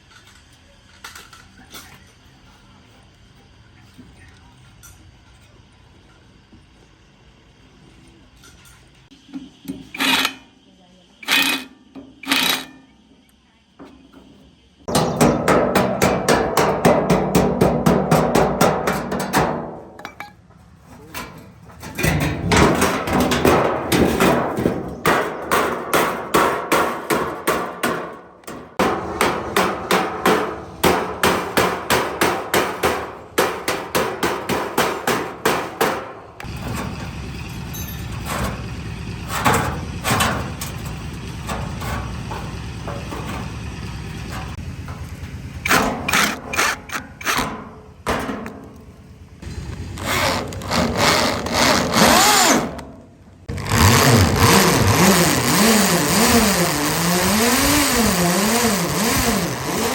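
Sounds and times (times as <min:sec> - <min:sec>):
steady running noise: 0:14.9 - 0:59.9
rapid hammer blows: 0:22.1 - 0:36.5, 0:49.5 - 0:52.8, 0:53.5 - 0:59.9.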